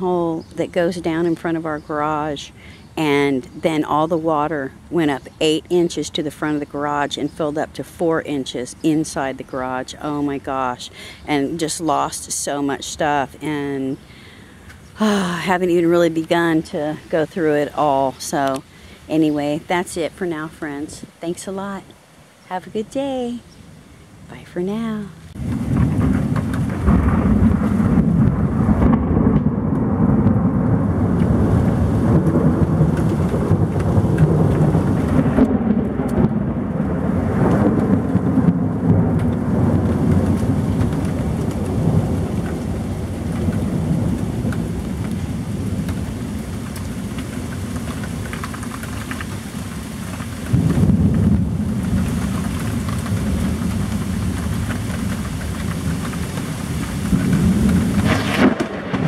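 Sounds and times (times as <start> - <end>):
heavy rain: 0.0 - 59.0
thunder rumbling: 22.6 - 59.0
loud thunder peal: 25.3 - 47.5, 50.5 - 56.2, 56.8 - 59.0.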